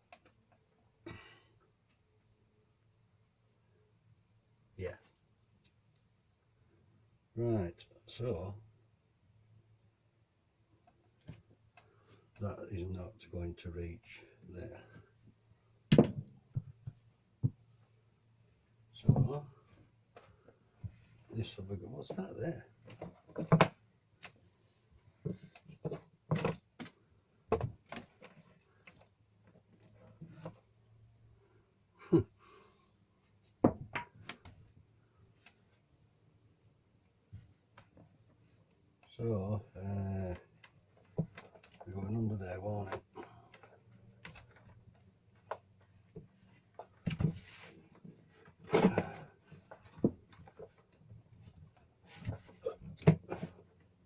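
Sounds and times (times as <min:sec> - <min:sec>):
knocks and clicks of cable: 0:15.9 - 0:17.6.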